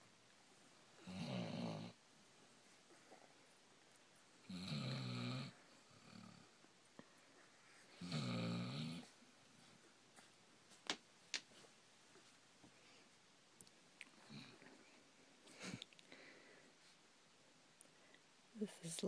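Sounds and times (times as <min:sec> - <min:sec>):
dog snoring: 0:01.0 - 0:02.0, 0:04.4 - 0:06.6, 0:07.9 - 0:09.2.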